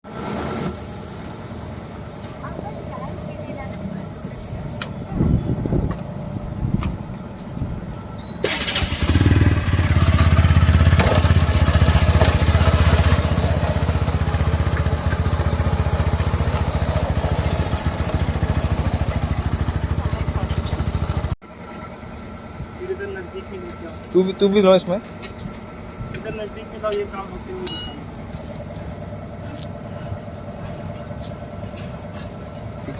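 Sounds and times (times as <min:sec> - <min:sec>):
motorcycle engine running: 0:08.5 - 0:21.4.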